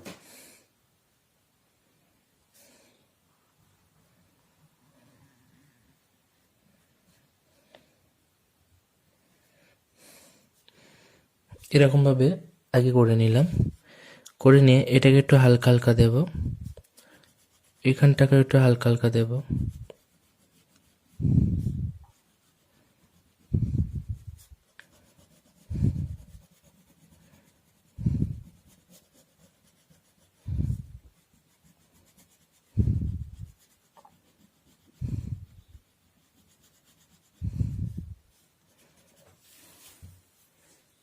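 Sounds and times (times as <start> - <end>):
colour rubbing on paper: 12.8 - 13.9, 14.5 - 41.0.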